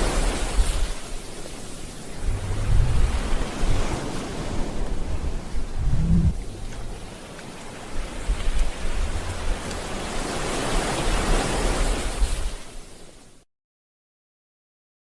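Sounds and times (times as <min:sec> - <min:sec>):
water rushing hiss: 0:00.0 - 0:13.2
low rumbling: 0:02.1 - 0:07.2.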